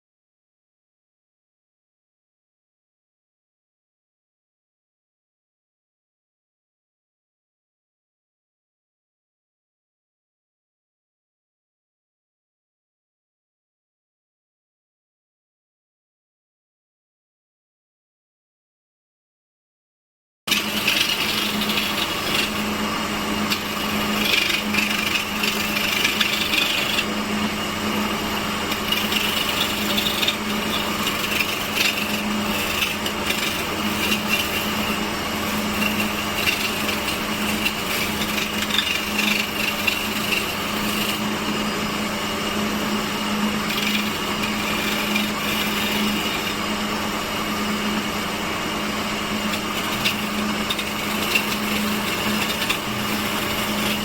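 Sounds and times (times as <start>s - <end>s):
harsh wood cutting: 20.5s - 54.0s
woodworking machine motor hum: 20.5s - 54.0s.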